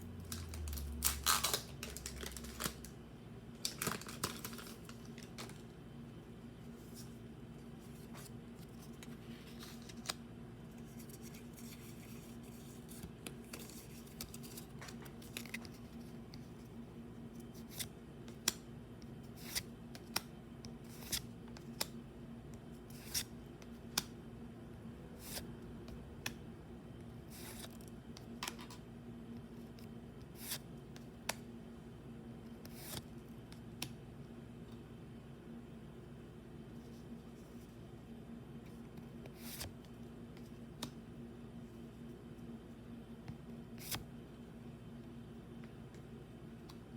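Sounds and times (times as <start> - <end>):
steady low hum: 0.0 - 46.9
cards and packaging clicking: 0.2 - 3.0, 3.6 - 5.6.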